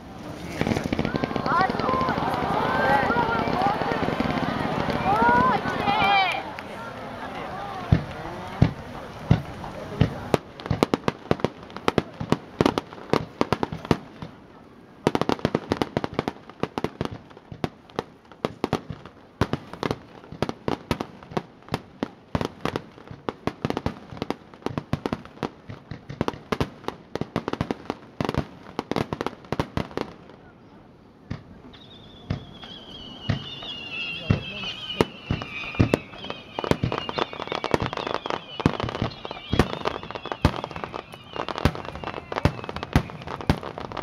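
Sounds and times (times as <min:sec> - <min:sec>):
fireworks cracking and banging: 0:00.0 - 0:30.4, 0:31.2 - 0:44.0
thin falling whistle: 0:31.7 - 0:43.7.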